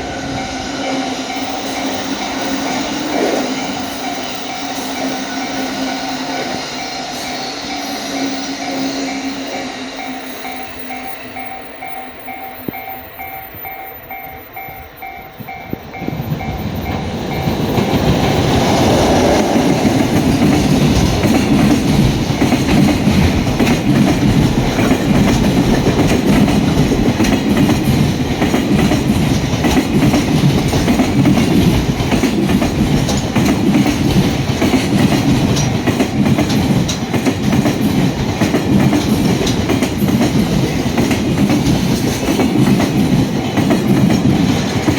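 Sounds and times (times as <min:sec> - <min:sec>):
freight train rumbling: 0:00.0 - 0:44.9
level-crossing alarm dinging: 0:00.0 - 0:44.9
wagon wheels clickety-clack: 0:19.8 - 0:44.9.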